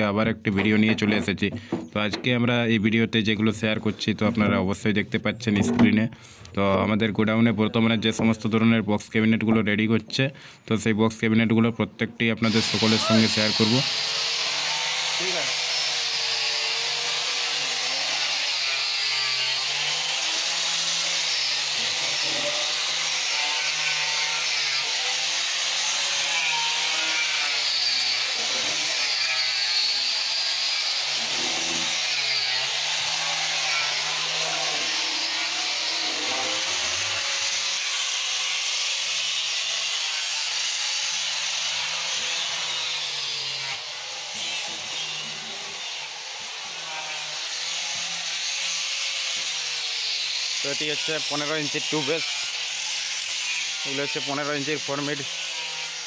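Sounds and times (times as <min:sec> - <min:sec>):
wood rasping: 0:12.5 - 0:56.0.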